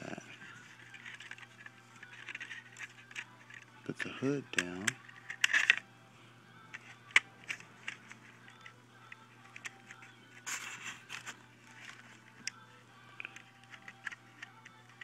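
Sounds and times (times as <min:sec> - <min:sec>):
plastic clatter: 0:00.7 - 0:05.8.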